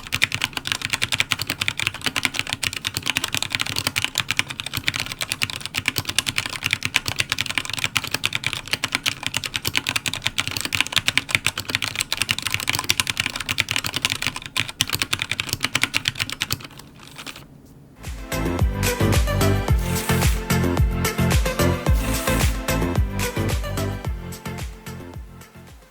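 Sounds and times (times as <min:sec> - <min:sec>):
fast mechanical keyboard typing: 0:00.0 - 0:17.5.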